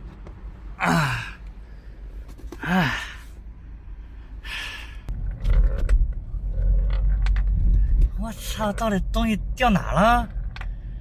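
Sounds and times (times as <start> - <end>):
man sighing: 0.8 - 1.5, 2.6 - 3.3.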